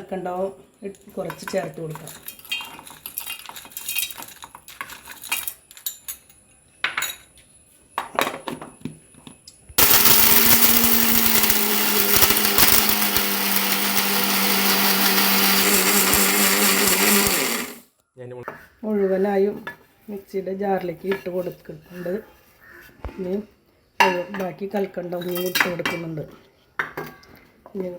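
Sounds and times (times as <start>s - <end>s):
hard pieces clinking into jar: 2.1s - 6.4s
electric mixer grinder running: 9.8s - 17.8s.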